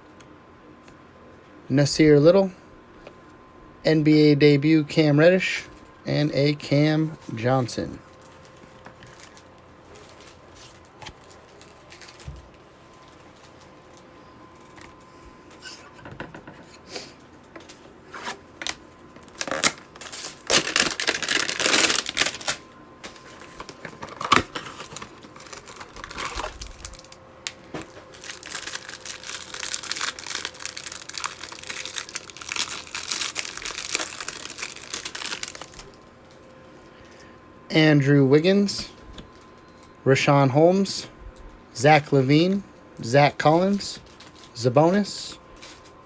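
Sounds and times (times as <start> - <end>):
plastic crinkling: 8.1 - 15.0, 18.2 - 36.1, 44.0 - 44.6
plastic wrapping tearing: 8.2 - 12.4, 18.1 - 36.0.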